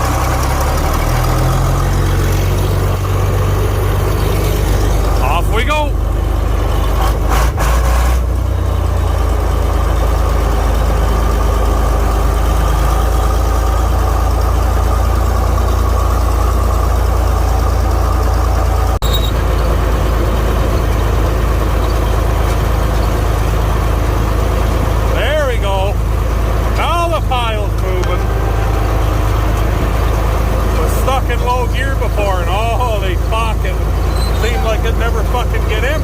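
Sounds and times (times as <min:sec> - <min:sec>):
diesel tractor engine running: 0:00.0 - 0:36.0
high whine: 0:26.8 - 0:32.3.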